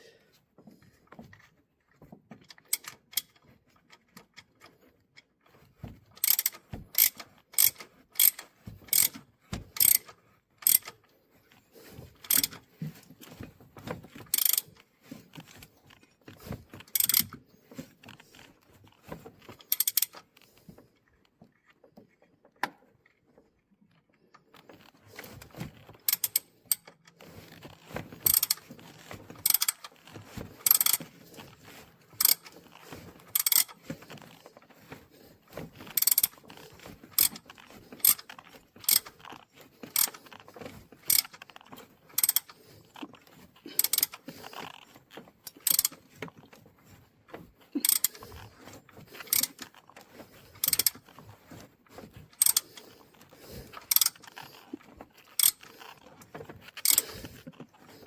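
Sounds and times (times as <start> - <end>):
hand ratchet clicking: 6.2 - 11.0, 12.2 - 12.7, 14.3 - 14.7, 16.8 - 17.4, 19.6 - 20.2, 25.2 - 27.0, 28.2 - 31.1, 32.2 - 33.8, 35.9 - 40.4, 41.0 - 42.6, 43.7 - 44.8, 45.5 - 46.1, 47.8 - 48.5, 49.2 - 49.8, 50.6 - 51.1, 52.4 - 53.0, 53.8 - 56.1, 56.8 - 57.3.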